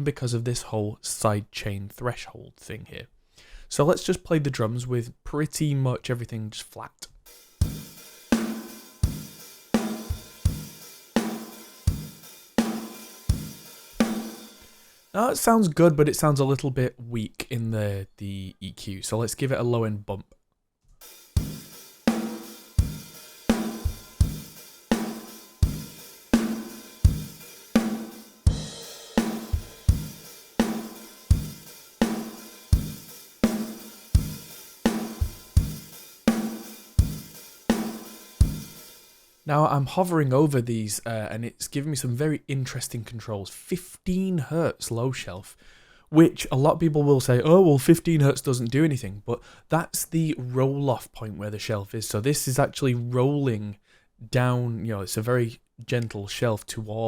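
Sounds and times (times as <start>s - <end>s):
drum kit playing a groove: 7.3s - 15.2s, 21.0s - 39.4s.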